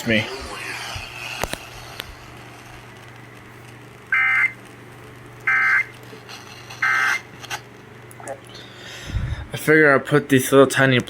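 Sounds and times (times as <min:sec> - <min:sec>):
steady low hum: 0:00.0 - 0:11.0
two-tone digital data bursts: 0:04.1 - 0:04.5, 0:06.8 - 0:07.2.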